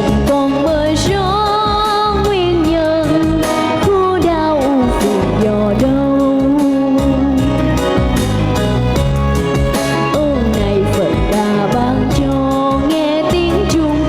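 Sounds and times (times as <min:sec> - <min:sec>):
backing track with steady beat: 0:00.0 - 0:14.0.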